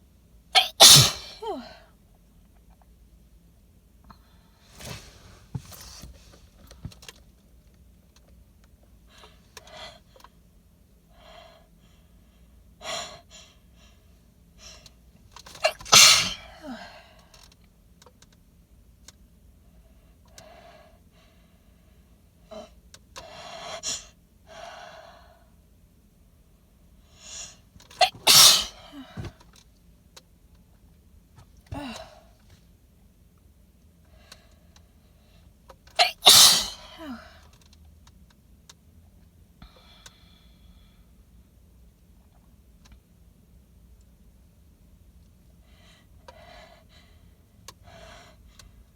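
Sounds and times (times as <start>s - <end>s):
woman sneezing: 0.6s - 1.8s, 15.6s - 17.0s, 27.9s - 29.3s, 31.7s - 32.2s, 36.0s - 37.4s.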